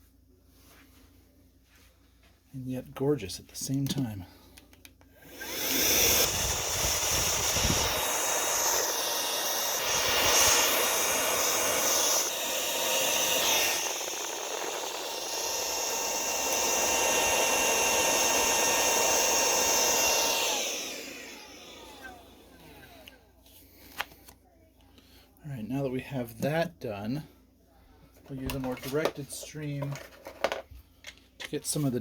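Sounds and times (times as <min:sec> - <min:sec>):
electric air blower hissing: 0:05.2 - 0:23.2.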